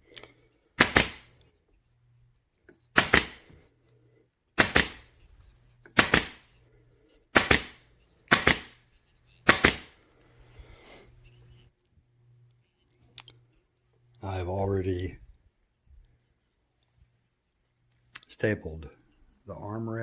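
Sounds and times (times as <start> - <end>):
upholstery stapler firing: 0.8 - 1.2, 3.0 - 3.4, 4.6 - 5.0.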